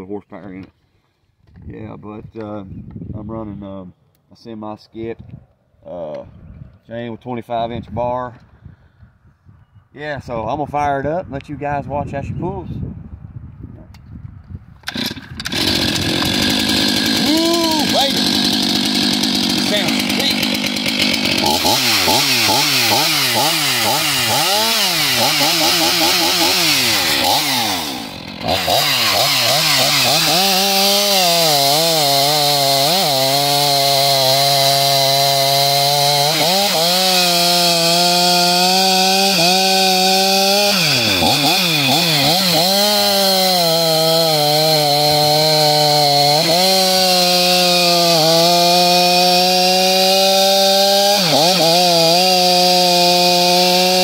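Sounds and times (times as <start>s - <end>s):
chainsaw revving and cutting wood: 14.9s - 54.0s.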